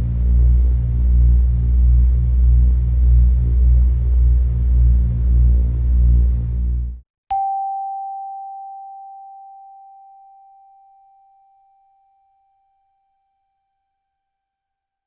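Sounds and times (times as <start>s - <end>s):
timer bell ringing: 7.3s - 12.8s.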